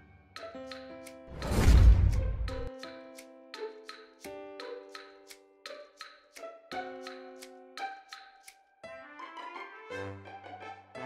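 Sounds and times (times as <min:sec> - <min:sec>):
light instrumental tune: 0:00.0 - 0:11.0
soft ticking percussion: 0:00.4 - 0:08.7.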